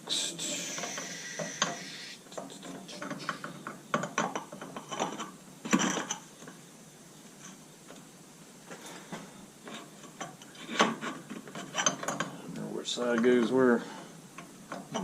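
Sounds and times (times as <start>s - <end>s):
metal parts clinking and knocking: 2.4s - 6.2s, 10.0s - 12.3s.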